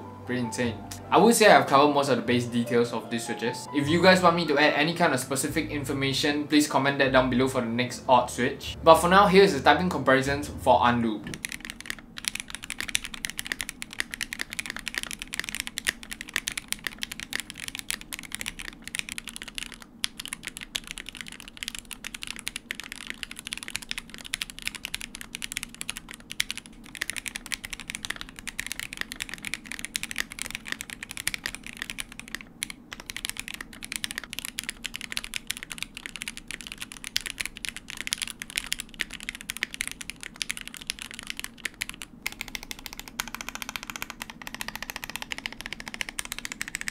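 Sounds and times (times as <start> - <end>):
fast typing on mechanical keyboard: 11.3 - 46.9.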